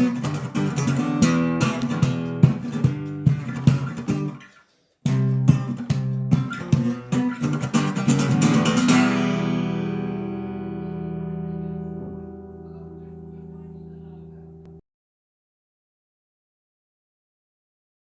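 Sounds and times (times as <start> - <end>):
fingerstyle acoustic guitar: 0.0 - 14.8
percussive knocks on guitar body: 1.6 - 4.2, 5.1 - 7.3.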